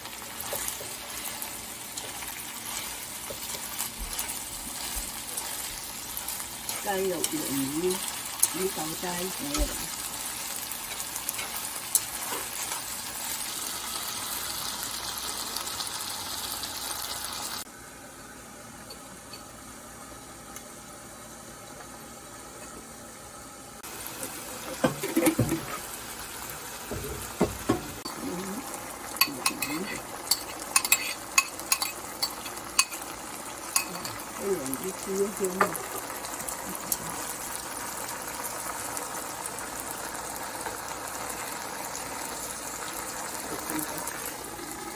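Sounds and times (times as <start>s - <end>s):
food sizzling in a wok: 0.0s - 17.7s, 18.3s - 44.9s
metal spatula scraping wok: 29.6s - 31.2s.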